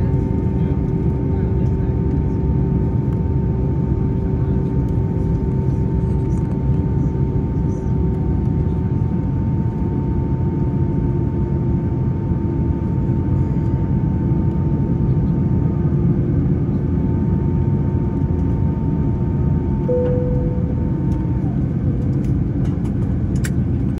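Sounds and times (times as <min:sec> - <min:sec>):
faint steady whines: 0:00.0 - 0:23.9
low cabin rumble: 0:00.0 - 0:24.0
short higher tone: 0:19.9 - 0:21.5.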